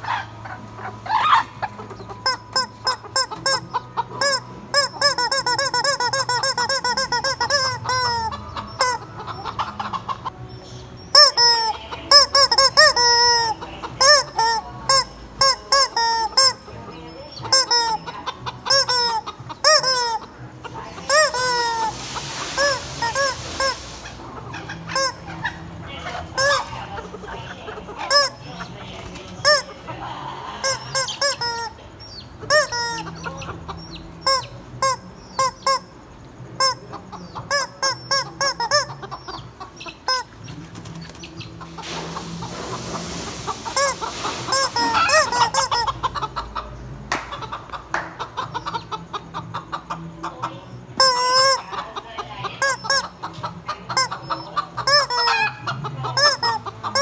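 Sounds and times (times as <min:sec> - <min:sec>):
chickens clucking: 0:00.0 - 0:57.0
rubber chicken toy squeaks: 0:02.2 - 0:09.5, 0:11.1 - 0:16.7, 0:17.4 - 0:20.4, 0:21.1 - 0:21.9, 0:22.6 - 0:28.5, 0:29.4 - 0:29.7, 0:30.6 - 0:36.0, 0:36.6 - 0:41.2, 0:43.8 - 0:46.1, 0:51.0 - 0:51.8, 0:52.6 - 0:57.0
rushing noise: 0:21.2 - 0:24.3, 0:41.6 - 0:45.7.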